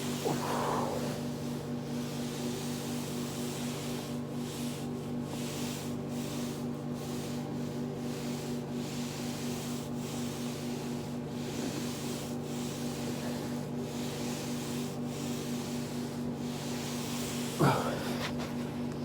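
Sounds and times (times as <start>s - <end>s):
foam roller rubbing hiss: 0.0s - 18.5s
steady low hum: 0.0s - 19.0s.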